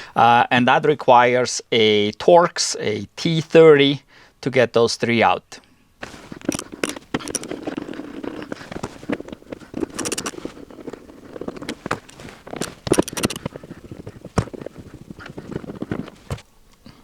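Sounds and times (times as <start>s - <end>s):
hand tool clicking and scraping: 6.0s - 16.8s.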